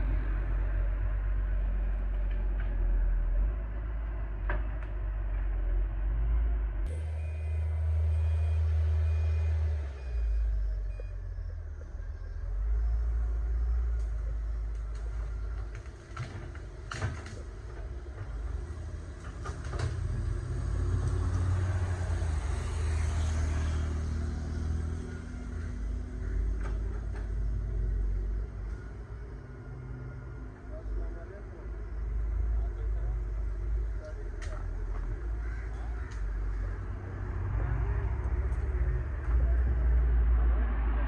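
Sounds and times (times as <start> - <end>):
diesel engine rumbling under load: 0.0 - 41.0.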